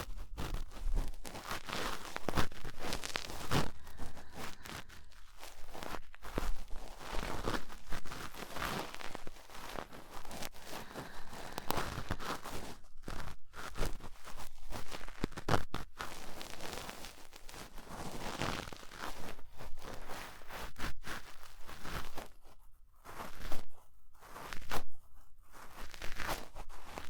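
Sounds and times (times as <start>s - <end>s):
cotton swab scraping microphone: 0.0s - 16.4s.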